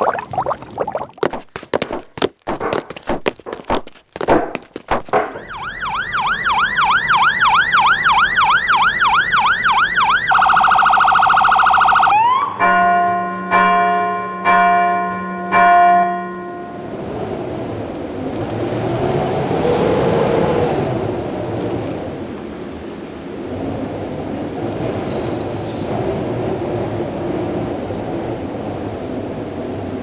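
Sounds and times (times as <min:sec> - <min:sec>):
emergency siren yelping: 0:05.4 - 0:12.6.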